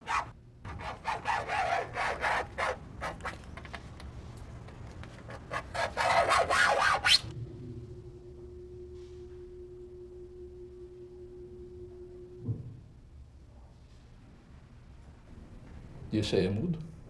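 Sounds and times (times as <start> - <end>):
steady pure tone: 6.7 - 15.6.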